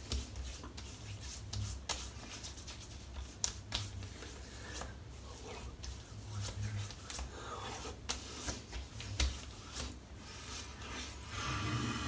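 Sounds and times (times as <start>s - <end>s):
sharp pats on face: 0.0s - 5.0s, 5.7s - 10.1s
hands spreading balm on face: 0.0s - 11.4s.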